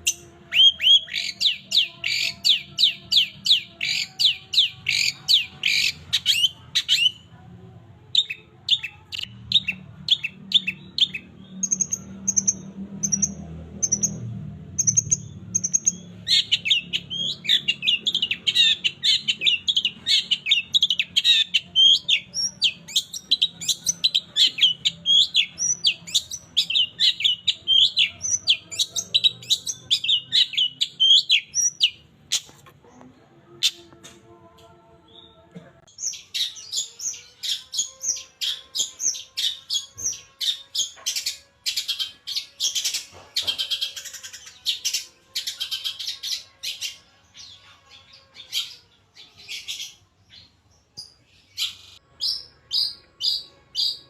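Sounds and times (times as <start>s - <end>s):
bird chattering chirps: 0.1s - 7.2s.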